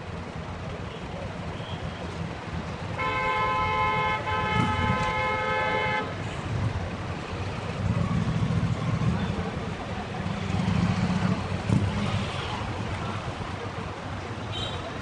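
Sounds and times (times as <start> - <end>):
vehicle horn blast: 3.0 - 6.1
engine rumble: 6.2 - 15.0.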